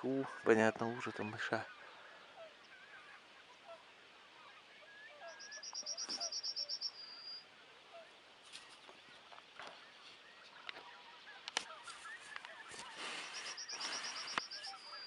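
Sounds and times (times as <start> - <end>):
distant geese calling: 0.0 - 15.0
songbird singing high notes: 4.8 - 7.5, 11.9 - 15.0.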